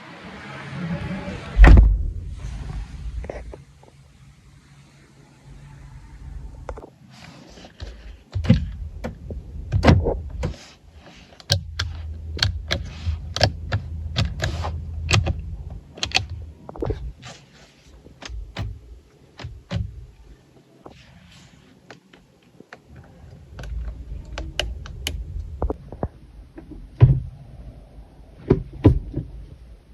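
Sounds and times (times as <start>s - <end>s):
low hum: 0.0s - 6.8s, 11.6s - 17.2s, 22.9s - 29.9s
car controls and doors clicking: 7.6s - 10.6s, 11.2s - 17.2s, 18.0s - 20.4s, 21.9s - 25.8s.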